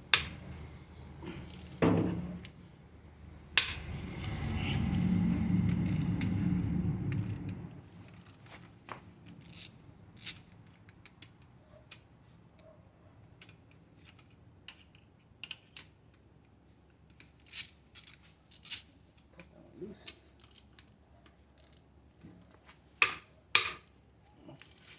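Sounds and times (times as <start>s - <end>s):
low noise: 0.0s - 7.9s.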